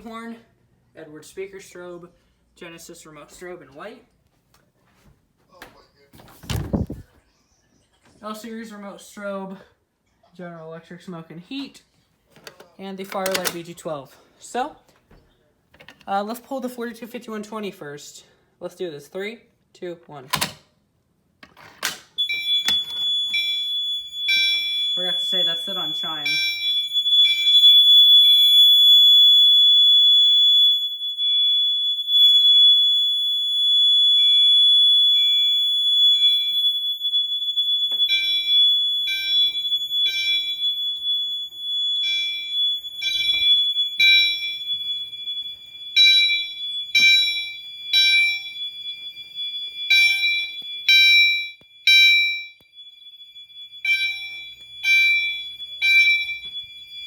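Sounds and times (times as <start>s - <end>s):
fire alarm chime ringing: 22.2s - 57.0s
high-pitched alarm tone: 22.2s - 57.0s.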